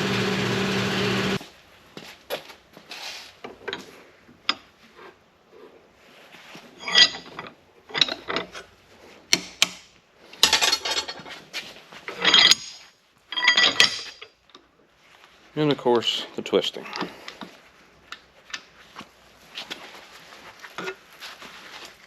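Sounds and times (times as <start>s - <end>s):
steel clinking and scraping: 6.6s - 8.7s, 10.4s - 14.4s.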